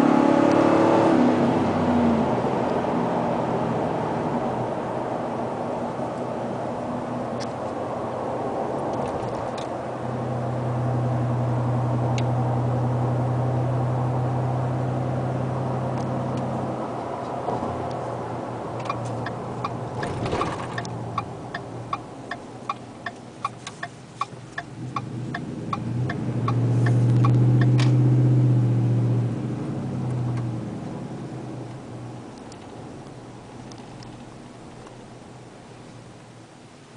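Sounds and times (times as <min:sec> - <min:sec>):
deep truck exhaust drone: 0:00.0 - 0:36.9
turn signal ticking: 0:18.8 - 0:28.0.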